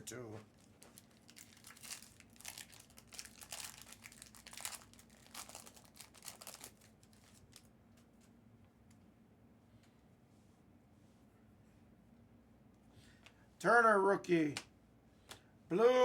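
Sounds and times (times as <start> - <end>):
card pack wrapper crinkling: 0.5 - 7.7.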